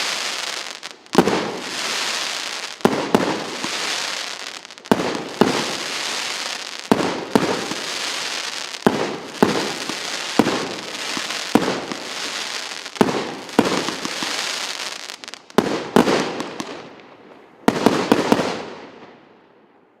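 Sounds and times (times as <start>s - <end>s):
crackling hiss of bursting stars: 0.0s - 16.6s
fireworks shots: 0.0s - 16.9s.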